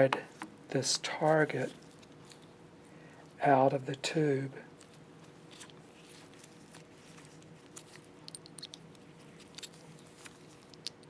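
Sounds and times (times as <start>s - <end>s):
faint steady hum: 0.0s - 11.0s
small clicks and light scrapes: 1.6s - 2.6s, 4.8s - 11.0s.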